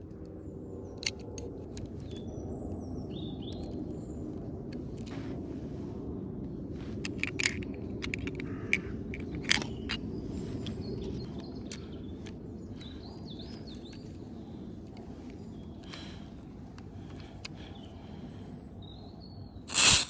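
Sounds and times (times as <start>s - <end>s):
outdoor background noise: 0.0s - 20.0s
bird chirping: 9.6s - 14.6s.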